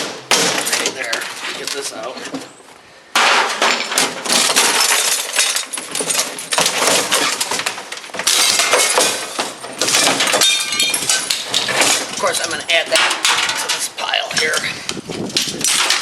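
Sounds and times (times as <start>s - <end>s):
glass breaking and crunching: 0.2s - 1.9s, 3.2s - 14.6s, 15.3s - 16.0s
glass shards clinking: 3.4s - 14.6s.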